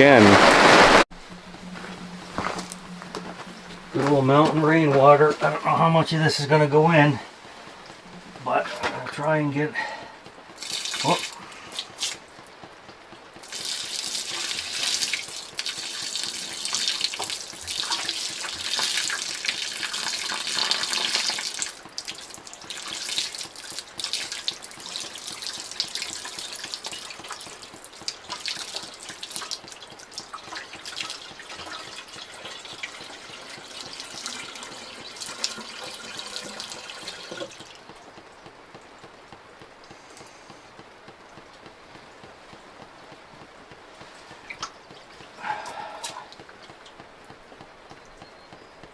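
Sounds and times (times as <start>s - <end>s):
rain pattering: 0.0s - 48.9s
water pouring from bucket: 8.4s - 12.2s, 13.4s - 38.0s.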